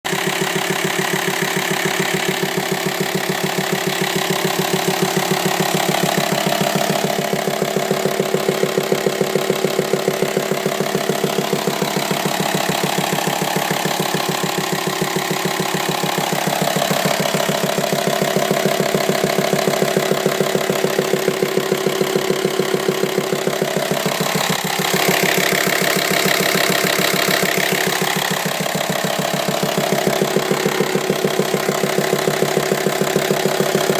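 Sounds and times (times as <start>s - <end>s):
engine idling with knocking: 0.0s - 33.9s.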